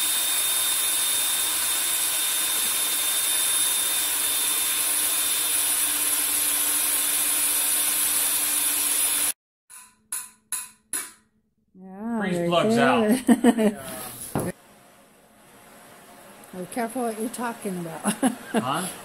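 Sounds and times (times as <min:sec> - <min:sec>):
blower tool hiss and whine: 0:00.0 - 0:09.4, 0:15.4 - 0:19.0.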